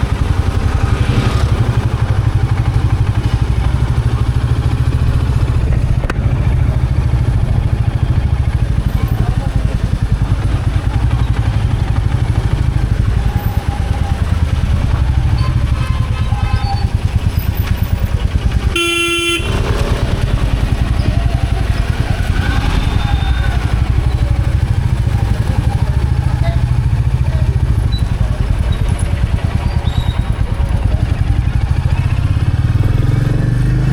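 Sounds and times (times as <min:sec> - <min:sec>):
motorcycle engine thumping: 0:00.0 - 0:32.9
vehicle horn honking: 0:18.7 - 0:20.1.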